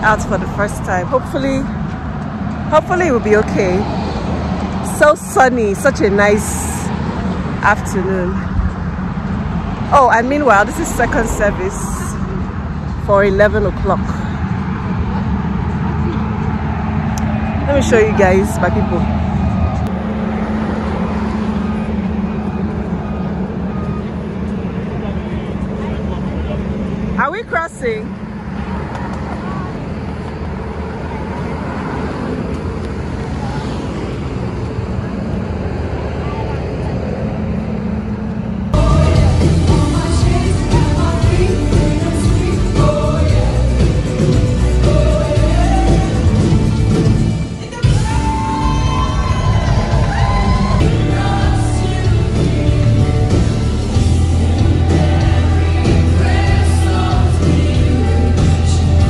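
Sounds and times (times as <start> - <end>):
road traffic passing: 0.0 - 59.0
sustained bass notes: 36.9 - 59.0
choir singing gospel: 38.7 - 47.1, 48.6 - 59.0.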